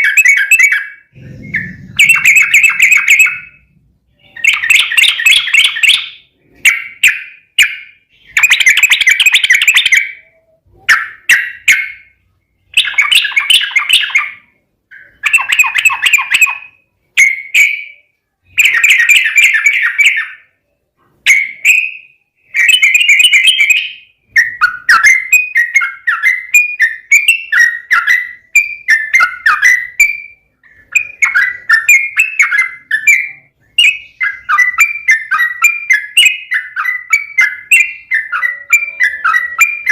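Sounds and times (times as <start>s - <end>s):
bulbul singing: 0.0s - 39.9s.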